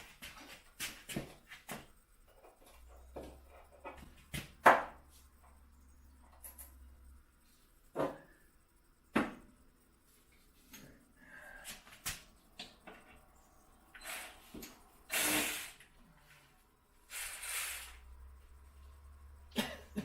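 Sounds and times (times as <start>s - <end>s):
short rasping bursts: 15.1s - 15.8s.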